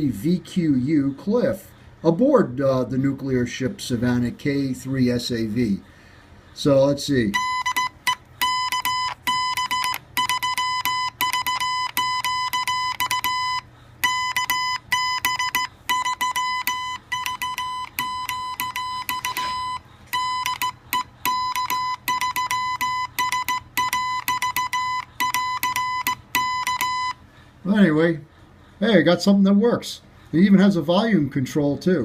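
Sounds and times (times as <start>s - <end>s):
high beeping morse tone: 7.3s - 27.2s.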